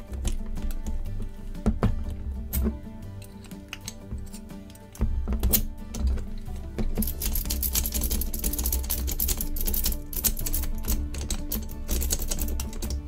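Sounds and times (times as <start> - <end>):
metallic clicking in a padlock: 2.5 - 6.3, 7.0 - 13.0.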